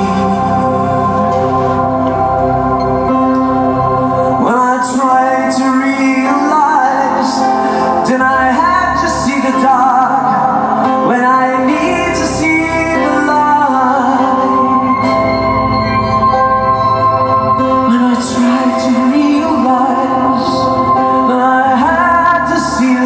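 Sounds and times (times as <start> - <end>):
person singing slow melody: 0.0 - 23.0
sustained keyboard chords: 0.0 - 23.0.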